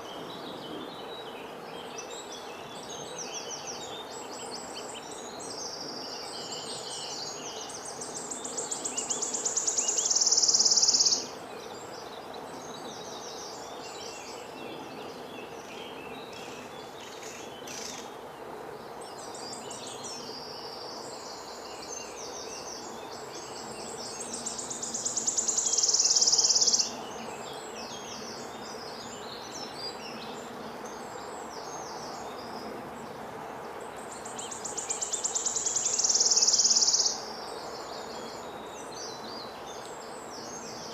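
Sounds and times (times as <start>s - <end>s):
outdoor background hiss: 0.0s - 40.9s
songbird trilling: 8.8s - 11.3s, 24.5s - 27.0s, 34.5s - 37.3s.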